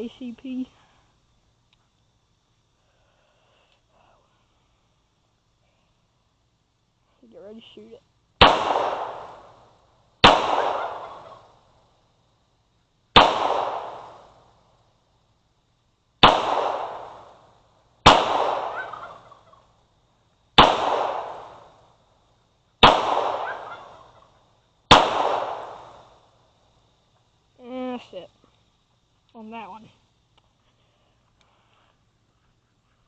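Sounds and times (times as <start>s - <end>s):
pistol shots with echo: 8.4s - 9.5s, 10.2s - 11.3s, 13.2s - 14.3s, 16.2s - 17.3s, 18.0s - 19.2s, 20.6s - 21.7s, 22.8s - 24.1s, 24.9s - 26.0s.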